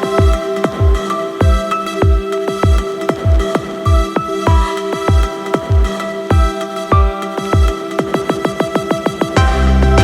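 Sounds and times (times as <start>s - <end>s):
electronic music with kick drums: 0.0s - 10.0s.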